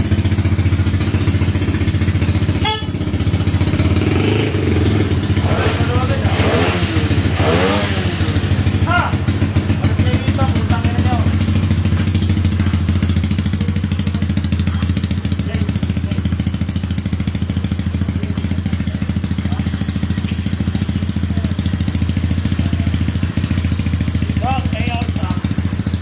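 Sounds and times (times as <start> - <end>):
scooter engine idling loudly: 0.0 - 26.0.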